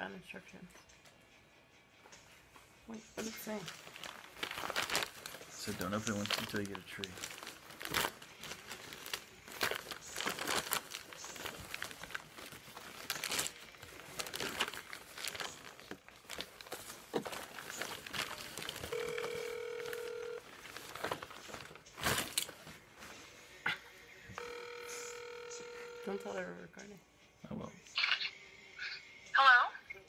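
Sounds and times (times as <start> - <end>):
packaging rustling and crinkling: 3.4 - 23.2
phone ringing tone: 18.8 - 20.5, 24.4 - 26.5.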